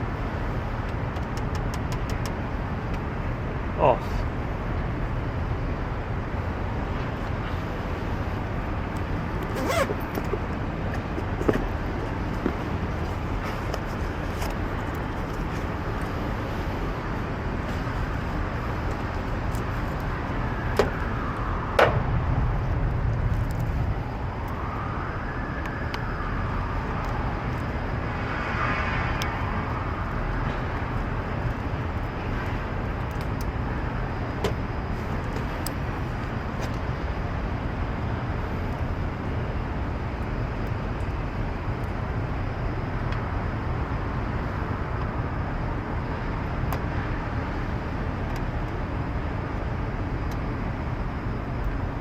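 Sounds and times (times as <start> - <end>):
city traffic: 0.0 - 52.0
sharp clicks and knocks: 0.8 - 3.0.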